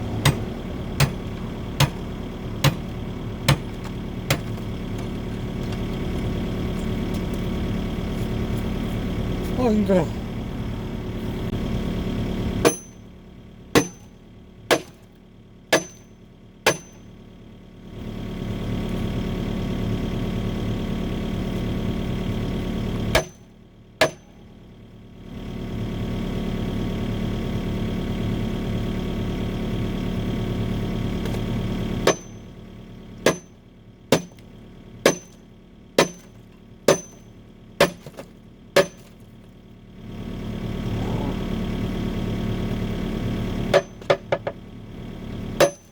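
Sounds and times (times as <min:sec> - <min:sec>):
excavator engine running: 0:00.0 - 0:45.9
sledgehammer hitting concrete: 0:00.2 - 0:01.2, 0:02.6 - 0:02.9, 0:03.5 - 0:04.6, 0:12.6 - 0:13.0, 0:13.8 - 0:14.1, 0:14.7 - 0:15.0, 0:15.7 - 0:16.1, 0:16.7 - 0:17.0, 0:23.2 - 0:23.4, 0:24.0 - 0:24.3, 0:32.0 - 0:32.4, 0:33.3 - 0:34.4, 0:35.1 - 0:35.4, 0:36.0 - 0:36.3, 0:36.9 - 0:39.2, 0:45.6 - 0:45.9.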